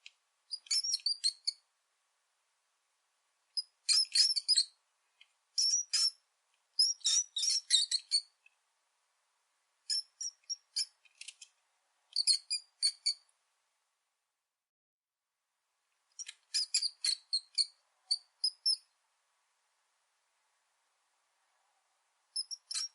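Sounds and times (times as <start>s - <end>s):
rat squeaking: 0.5s - 1.6s, 3.6s - 4.8s, 5.6s - 6.2s, 6.8s - 8.4s, 9.9s - 11.4s, 12.1s - 13.3s, 16.2s - 18.9s, 22.4s - 22.9s.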